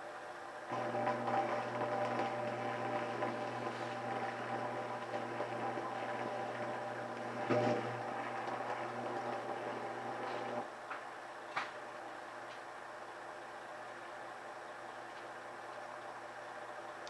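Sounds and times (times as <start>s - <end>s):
mechanical hum: 0.0s - 17.0s.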